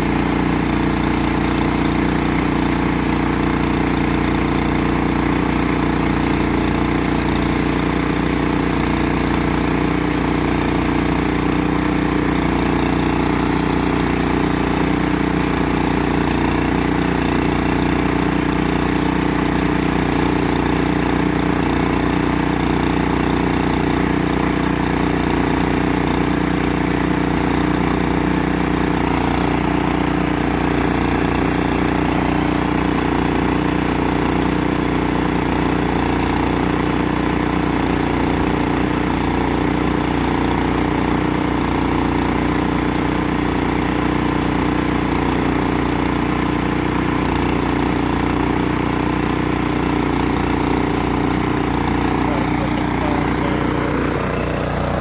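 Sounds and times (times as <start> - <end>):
engine droning: 0.0 - 3.6, 7.7 - 18.7, 27.4 - 41.9, 47.0 - 55.0.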